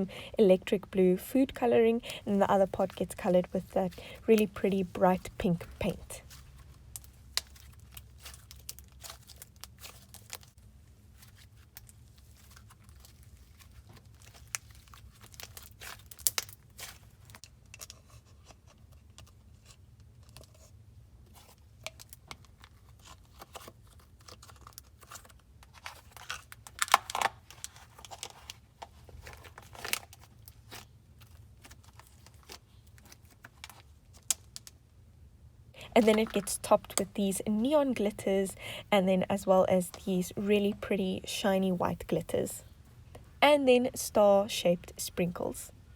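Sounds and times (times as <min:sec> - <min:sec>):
slime kneaded and stretched: 0:01.4 - 0:20.7.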